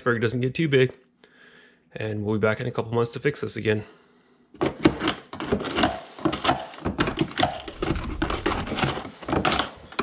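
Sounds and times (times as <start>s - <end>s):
ice and plastic parts clattering: 4.6s - 10.0s.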